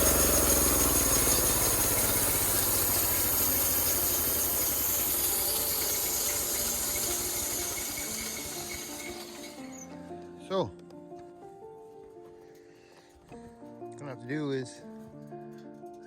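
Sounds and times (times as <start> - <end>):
sawmill engine winding down: 0.0 - 10.1.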